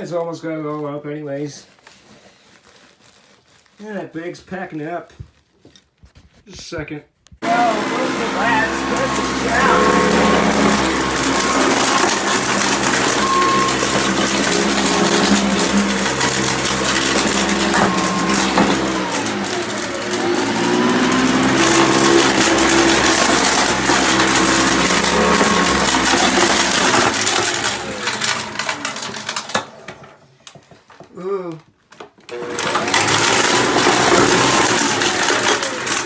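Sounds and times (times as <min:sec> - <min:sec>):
vacuum cleaner running: 0:07.4 - 0:29.7, 0:32.3 - 0:36.0
debris clattering in vacuum: 0:07.4 - 0:30.1, 0:32.3 - 0:36.0.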